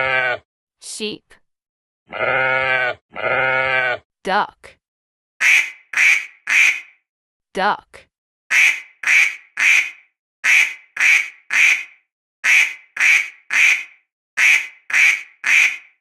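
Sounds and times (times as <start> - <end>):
duck quacking: 5.4 - 6.9, 8.5 - 16.0.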